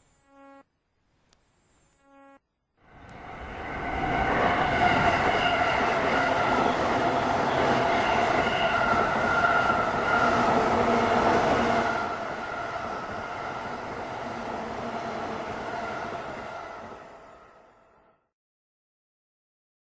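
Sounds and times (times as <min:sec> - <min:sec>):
katydid stridulating: 0:00.0 - 0:00.6, 0:01.6 - 0:02.4.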